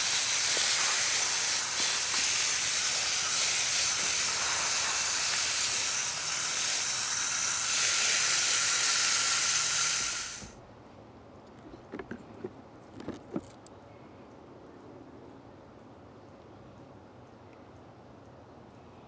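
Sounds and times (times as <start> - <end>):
water running: 0.0 - 10.6.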